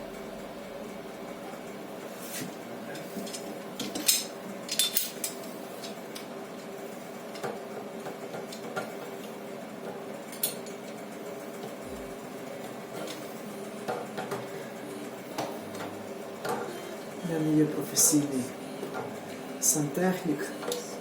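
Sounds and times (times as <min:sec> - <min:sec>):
low hum: 0:00.0 - 0:02.0.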